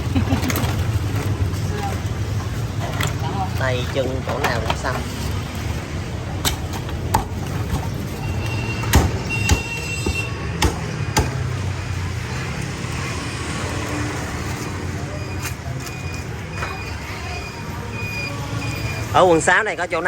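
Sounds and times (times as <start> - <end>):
street traffic rumble: 0.0 - 20.0
cleaver chopping on a block: 6.4 - 7.8, 8.9 - 11.5.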